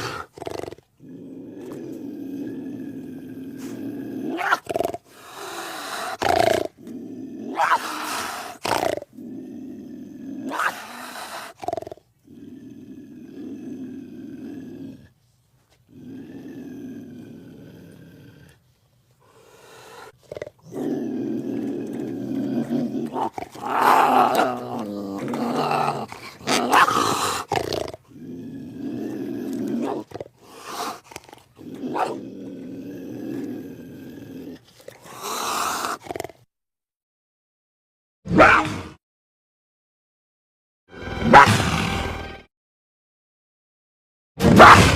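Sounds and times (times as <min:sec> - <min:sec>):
creature roars: 0:00.0 - 0:11.6, 0:19.4 - 0:31.0, 0:38.3 - 0:39.0
creature growls: 0:00.0 - 0:15.1, 0:15.9 - 0:18.6, 0:19.2 - 0:36.5.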